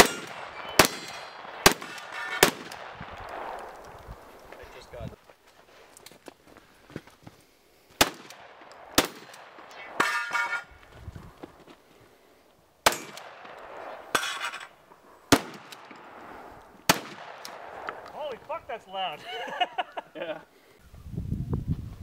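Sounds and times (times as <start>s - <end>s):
shotgun shots: 0.0s - 3.8s, 8.0s - 10.7s, 12.8s - 14.5s, 15.3s - 18.0s
metallic clattering: 9.2s - 10.8s, 14.1s - 14.8s.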